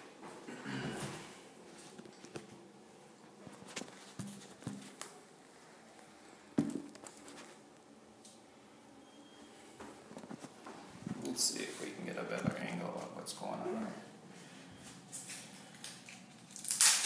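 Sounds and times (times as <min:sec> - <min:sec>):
cardboard knocks and rustles: 0:06.6 - 0:07.2.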